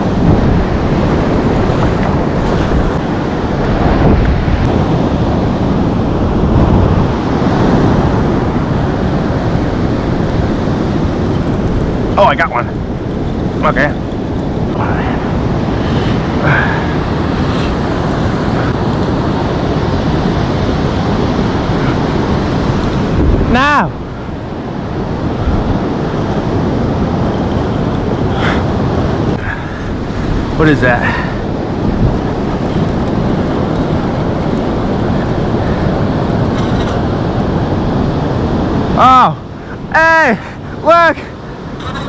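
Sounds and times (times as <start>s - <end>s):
wind on microphone: 0.0s - 39.9s
ocean surf: 0.0s - 42.0s.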